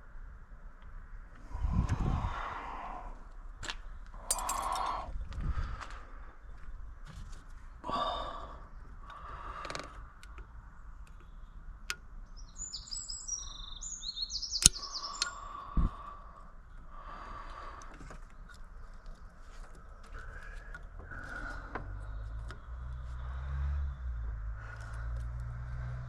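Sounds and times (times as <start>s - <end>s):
songbird chirping: 10.2s - 26.0s
sharp click: 14.5s - 15.4s.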